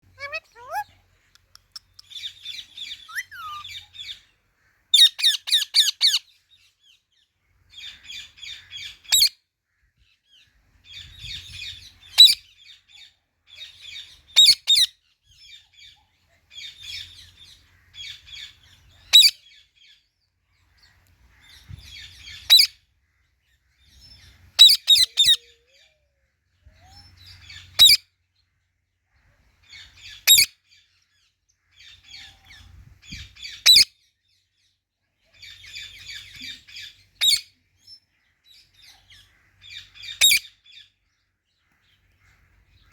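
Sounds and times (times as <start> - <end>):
parrot squawks: 0.1 - 1.0, 2.9 - 3.8
parrot chattering chirps: 0.1 - 2.2, 2.8 - 3.9.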